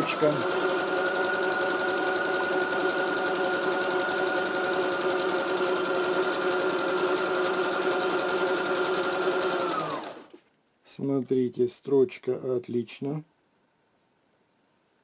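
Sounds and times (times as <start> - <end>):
sewing machine running: 0.0 - 10.4.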